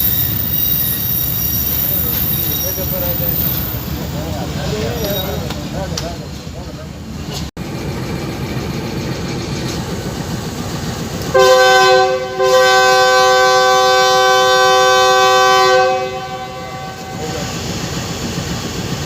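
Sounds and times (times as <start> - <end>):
train running at speed: 0.0 - 19.0
locomotive air horn: 11.3 - 17.5.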